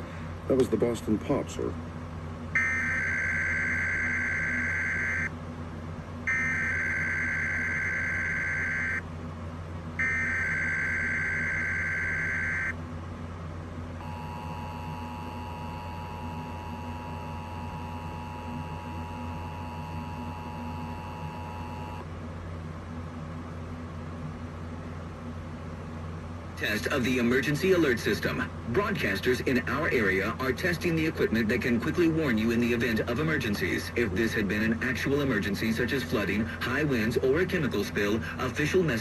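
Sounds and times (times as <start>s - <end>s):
low hum: 0.0s - 39.0s
two-tone attention signal: 2.6s - 5.3s, 6.3s - 9.0s, 10.0s - 12.7s
warbling data screech: 2.6s - 5.3s, 6.3s - 9.0s, 10.0s - 12.8s.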